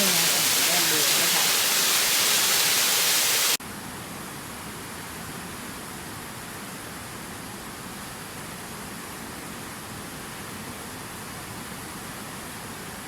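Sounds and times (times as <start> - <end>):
waterfall rushing: 0.0 - 3.6.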